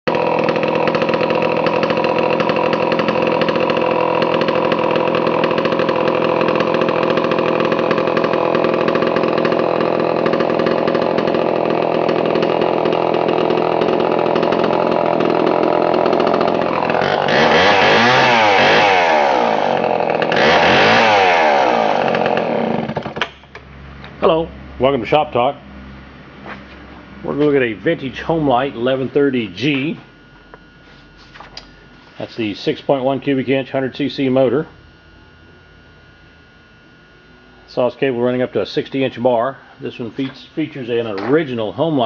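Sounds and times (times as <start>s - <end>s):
chainsaw idling and revving: 0.0s - 23.4s.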